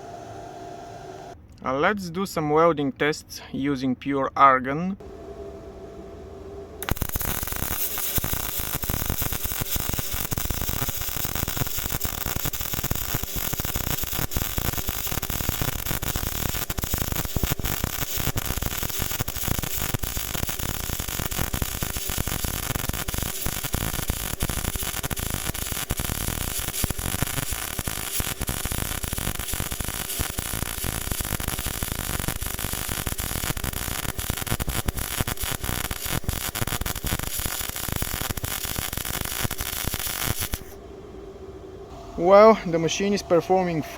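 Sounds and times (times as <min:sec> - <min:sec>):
welding arc crackling: 0:06.8 - 0:40.8.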